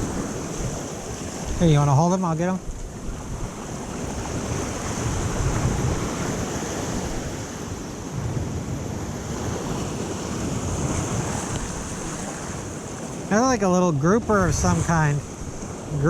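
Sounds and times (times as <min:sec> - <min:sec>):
ocean surf washing ashore: 0:00.0 - 0:16.0
wind rumbling on microphone: 0:00.0 - 0:16.0.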